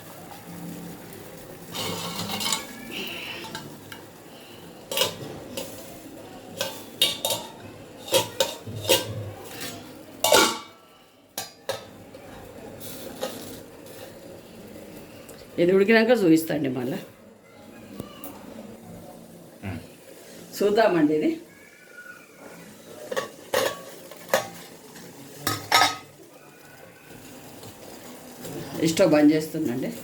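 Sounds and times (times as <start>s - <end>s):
metal cookware clinking: 1.6s - 4.2s, 4.8s - 10.8s, 11.4s - 14.1s, 23.0s - 26.3s.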